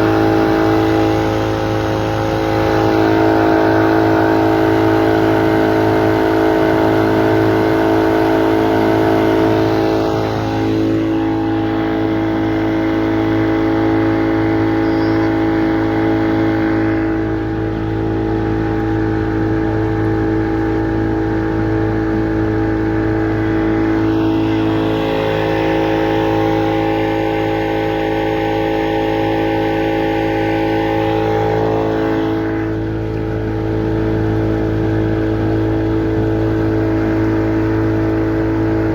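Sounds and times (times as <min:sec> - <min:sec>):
motorboat engine running: 0:00.0 - 0:38.9.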